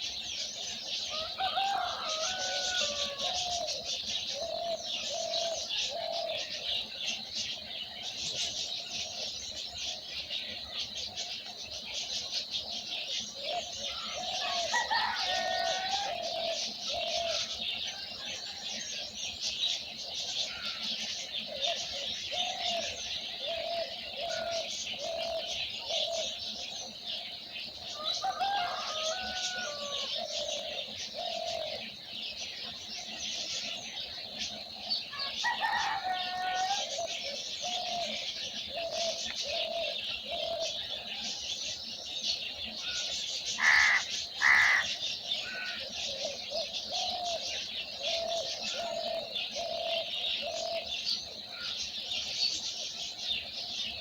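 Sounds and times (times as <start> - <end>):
lower repeated bird call: 42.9 - 50.9
louder varied bird calls: 43.6 - 44.9.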